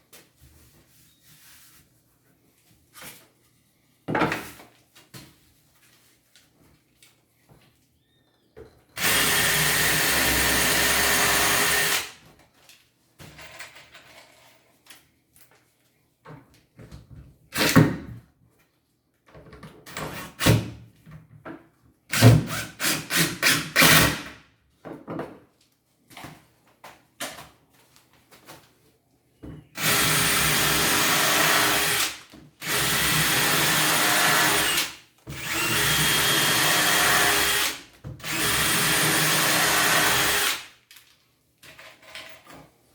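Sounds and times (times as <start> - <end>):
electric drill running: 9.0 - 12.1, 29.8 - 40.6.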